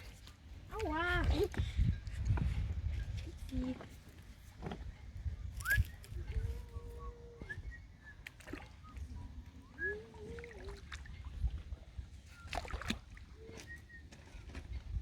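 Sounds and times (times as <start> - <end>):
wind rumble on microphone: 0.0 - 15.0
water sloshing around wading legs: 8.2 - 15.0.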